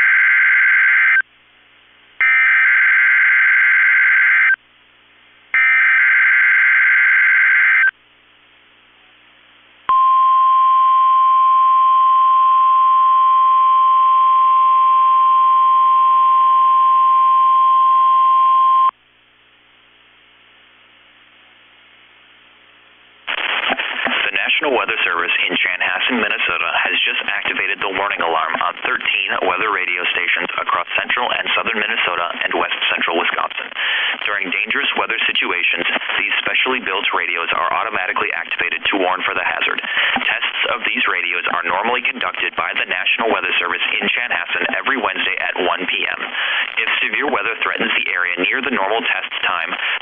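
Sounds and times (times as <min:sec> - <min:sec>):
steady warning alarm tone: 0:02.2 - 0:04.6, 0:05.6 - 0:07.9
person speaking announcement: 0:24.2 - 0:50.0.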